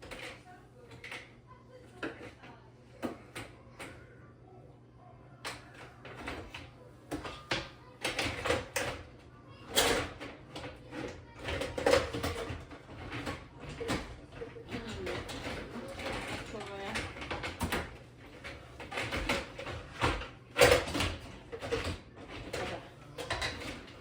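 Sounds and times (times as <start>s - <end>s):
dishes clinking in dishwasher racks: 9.7s - 24.0s.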